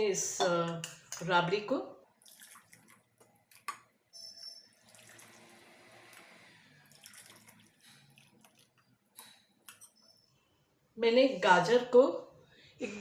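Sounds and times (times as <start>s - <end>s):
soup pouring splash: 2.2s - 3.6s, 4.7s - 9.4s.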